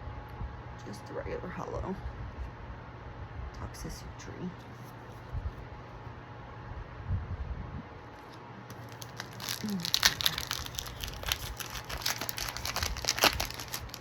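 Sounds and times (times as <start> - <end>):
foil wrapper crinkling: 8.2 - 14.0.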